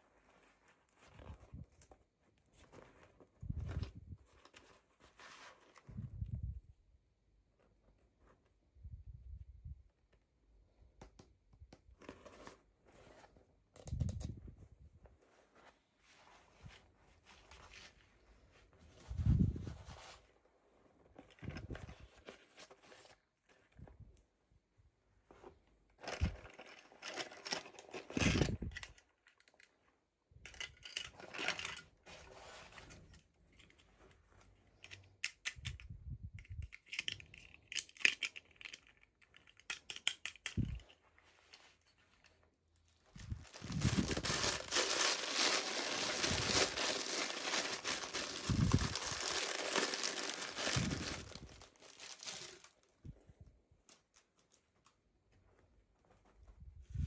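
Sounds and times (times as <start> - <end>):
packaging crinkling and tearing: 43.1 - 52.9
packaging clicks: 43.4 - 52.7.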